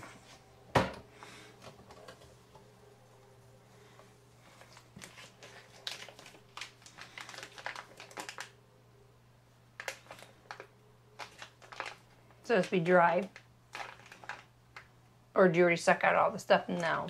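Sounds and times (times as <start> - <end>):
plastic bag crinkling: 4.4 - 8.6, 9.8 - 14.9.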